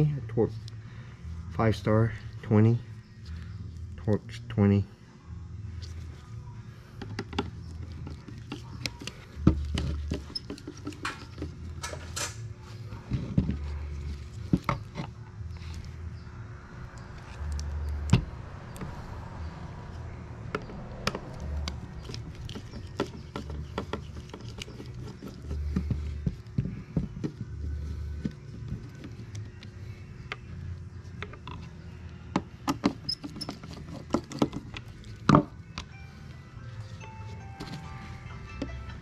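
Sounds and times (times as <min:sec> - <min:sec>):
hand tools clicking and tapping: 0:07.0 - 0:12.4, 0:20.5 - 0:30.5.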